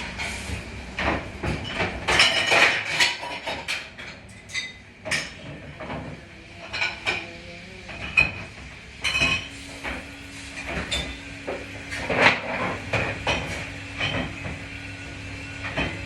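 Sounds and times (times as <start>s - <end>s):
dishes and cutlery clattering: 1.0s - 6.0s, 7.9s - 9.5s, 11.9s - 14.4s.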